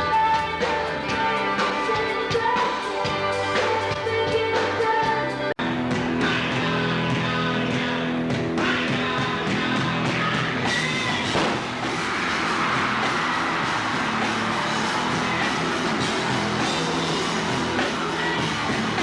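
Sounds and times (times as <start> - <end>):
person singing: 0.0 - 11.6, 16.6 - 19.0
guitar: 0.0 - 19.0
rock band playing: 0.0 - 19.0.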